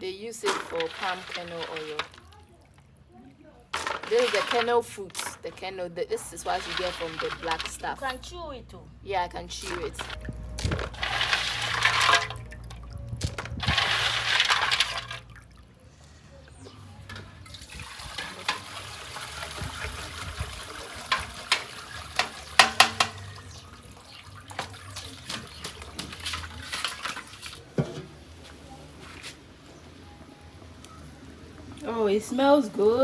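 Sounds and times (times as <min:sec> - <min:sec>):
liquid splashing and pouring: 0:00.4 - 0:02.8, 0:06.4 - 0:08.0, 0:09.6 - 0:15.7, 0:17.4 - 0:27.7
scattered clicks and knocks: 0:22.2 - 0:23.3.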